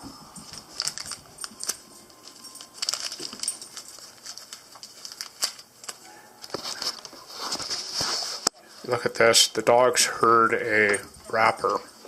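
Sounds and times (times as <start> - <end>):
plastic wrapper crinkling: 0.0 - 9.1.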